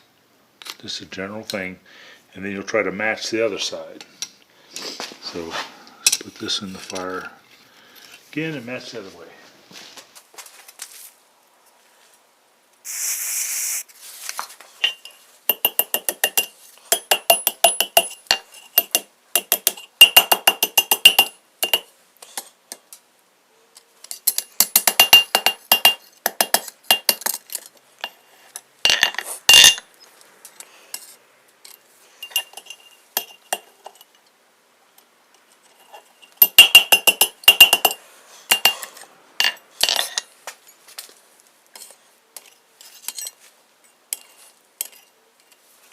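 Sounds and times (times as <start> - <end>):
short hiss: 12.8 - 14.4.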